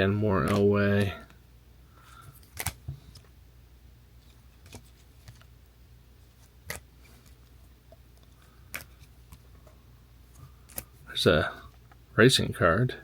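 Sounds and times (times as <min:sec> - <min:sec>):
faint low hum: 0:00.0 - 0:13.0
trading cards clicking and tapping: 0:00.4 - 0:00.7.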